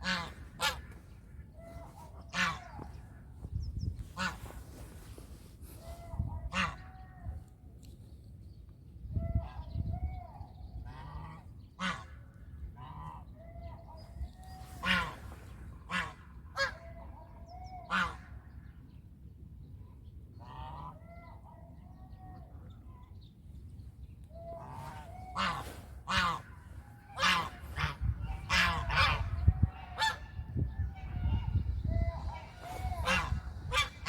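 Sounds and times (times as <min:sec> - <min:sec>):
geese honking: 0:00.0 - 0:03.0, 0:04.1 - 0:04.7, 0:14.8 - 0:17.1, 0:24.4 - 0:34.0.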